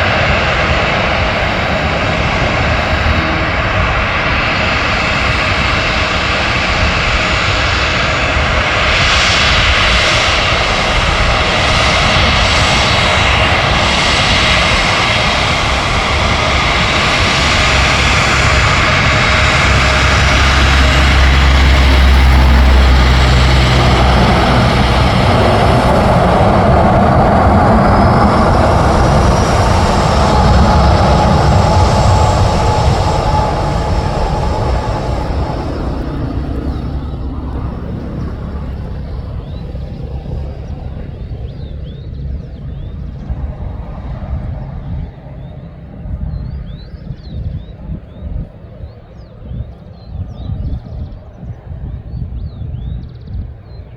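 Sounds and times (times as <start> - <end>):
deep rumble: 0.0 - 53.9
jet engines roaring: 0.0 - 53.9.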